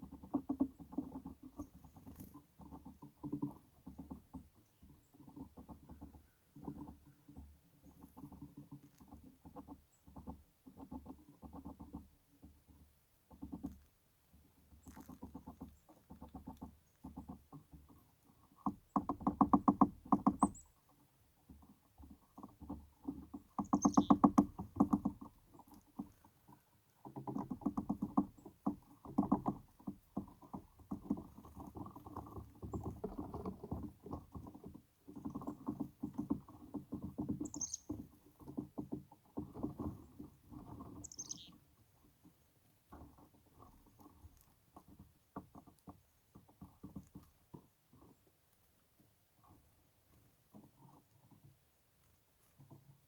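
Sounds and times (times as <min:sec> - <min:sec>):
chickadees calling: 0:23.6 - 0:24.5, 0:37.4 - 0:38.0, 0:41.0 - 0:41.6.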